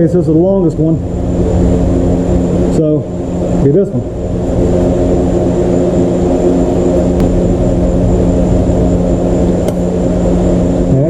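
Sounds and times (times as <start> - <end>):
engine-like mechanical drone: 0.0 - 11.0.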